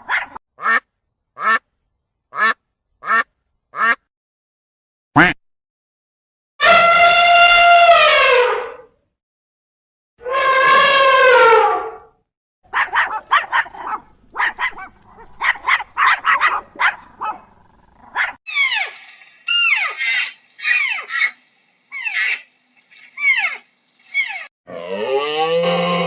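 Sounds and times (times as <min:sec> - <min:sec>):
dog barking: 0:00.0 - 0:00.4, 0:12.7 - 0:18.4
long animal call: 0:18.5 - 0:26.0.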